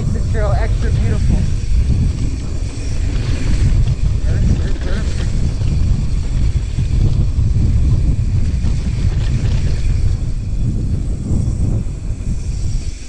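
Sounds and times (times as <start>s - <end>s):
bike rumbling on dirt trail: 0.0s - 13.0s
wind buffeting microphone: 0.0s - 13.0s.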